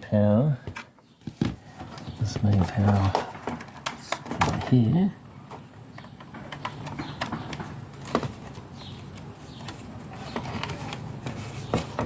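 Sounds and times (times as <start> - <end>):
plastic parts clicking and knocking: 0.6 - 12.0.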